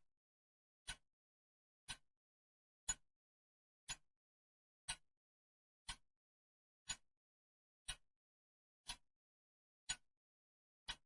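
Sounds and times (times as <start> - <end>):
clock ticking: 0.8 - 1.0, 1.8 - 2.0, 2.8 - 3.0, 3.8 - 4.1, 4.8 - 5.1, 5.8 - 6.0, 6.8 - 7.1, 7.8 - 8.1, 8.8 - 9.1, 9.8 - 10.1.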